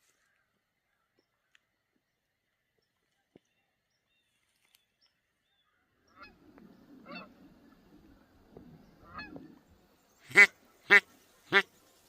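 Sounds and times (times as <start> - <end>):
ducks quacking: 6.1 - 8.3, 8.9 - 9.6, 10.2 - 11.7.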